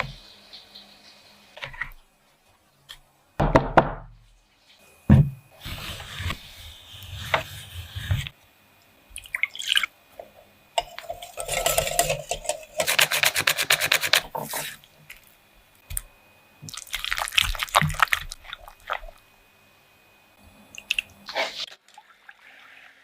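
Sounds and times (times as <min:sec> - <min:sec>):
liquid stirred in a bowl: 0:10.8 - 0:14.9.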